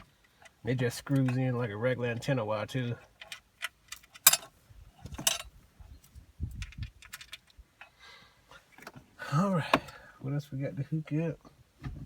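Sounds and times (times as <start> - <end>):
connectors clicking and rattling: 3.0 - 5.6, 6.5 - 7.9.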